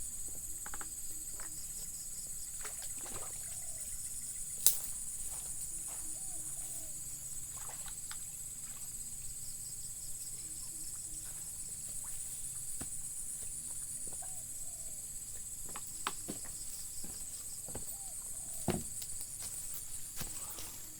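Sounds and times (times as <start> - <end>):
high-pitched insect chorus: 0.0 - 20.9.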